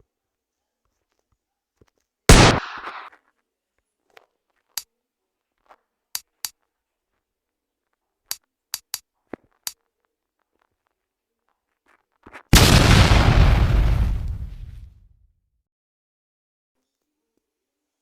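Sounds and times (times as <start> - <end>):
brief sharp pops: 2.3 - 3.1
loud sharp bang: 2.3 - 3.1.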